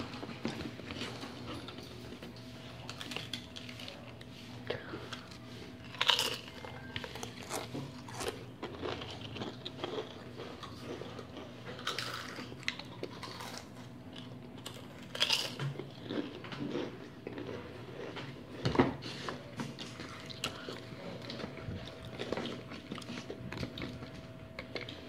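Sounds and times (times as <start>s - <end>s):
crisps being bitten and chewed: 0.0s - 4.3s, 5.1s - 25.0s.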